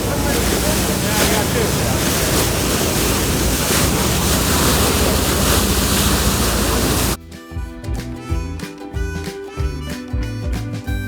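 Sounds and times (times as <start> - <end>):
waves rushing: 0.0 - 7.2
wind buffeting microphone: 0.0 - 7.2
harmonica-led music: 7.2 - 11.0.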